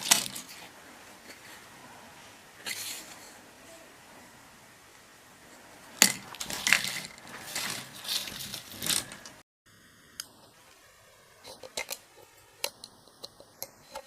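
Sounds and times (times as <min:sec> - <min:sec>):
crackling and clattering: 0:00.0 - 0:01.7, 0:05.5 - 0:09.4.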